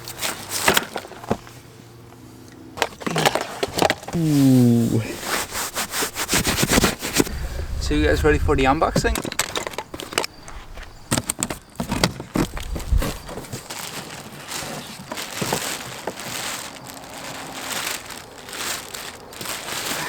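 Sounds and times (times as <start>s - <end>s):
plastic wrapping crinkling: 8.8s - 20.0s.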